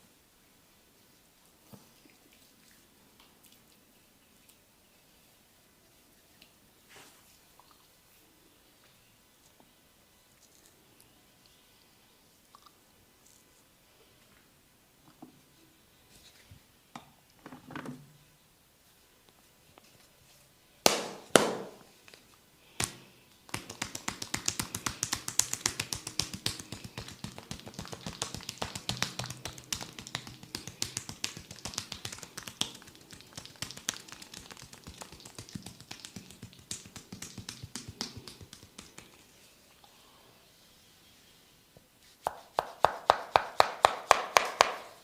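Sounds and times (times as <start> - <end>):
massage slaps on body: 20.9 - 21.8, 22.8 - 39.2, 42.2 - 45.0
rapid massage taps: 22.8 - 39.3, 42.2 - 45.0.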